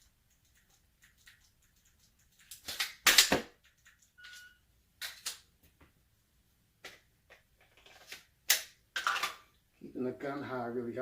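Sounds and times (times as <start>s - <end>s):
short electronic beep: 4.2s - 4.6s.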